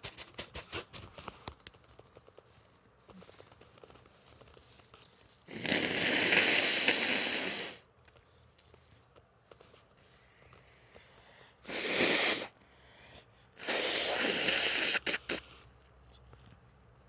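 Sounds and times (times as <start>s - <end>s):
person blowing nose: 5.5s - 7.9s, 11.6s - 12.6s, 13.6s - 15.6s.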